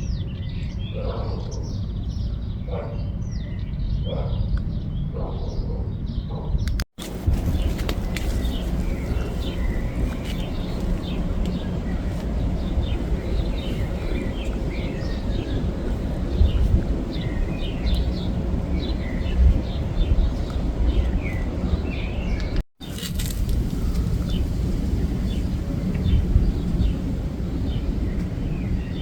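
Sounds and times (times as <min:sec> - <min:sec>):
small birds chirping: 0:00.0 - 0:23.1, 0:23.8 - 0:29.0
low outdoor rumble: 0:07.0 - 0:29.0.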